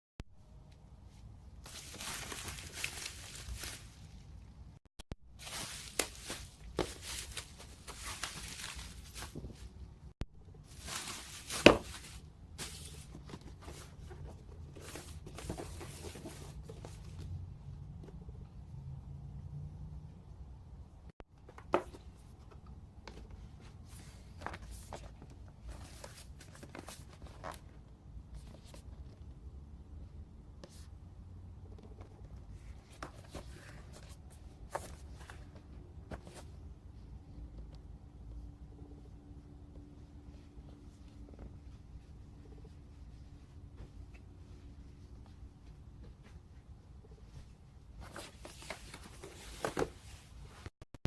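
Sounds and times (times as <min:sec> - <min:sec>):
cardboard box rustling: 0:01.7 - 0:04.0, 0:05.4 - 0:09.7, 0:10.7 - 0:16.7
packaging rustling and knocks: 0:10.8 - 0:12.8.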